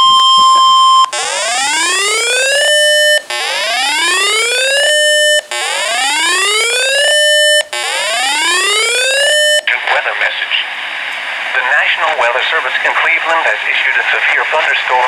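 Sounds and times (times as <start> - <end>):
siren-like alert whoop: 0.0 - 9.6.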